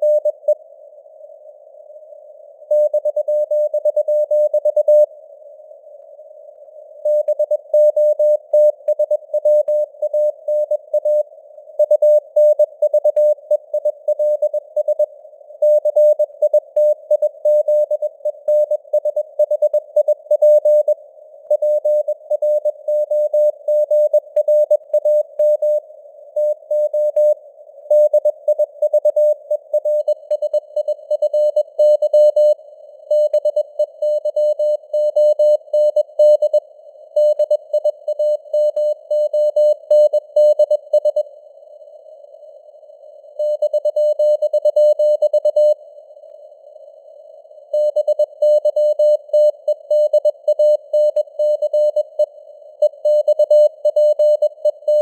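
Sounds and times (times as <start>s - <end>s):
morse code tone beeping: 52.9s - 55.0s.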